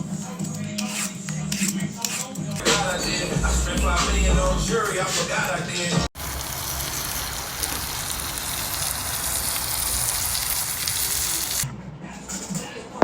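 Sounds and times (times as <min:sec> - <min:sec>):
music: 0:00.0 - 0:06.1, 0:11.6 - 0:13.0
fish sizzling on a grill: 0:06.2 - 0:11.7.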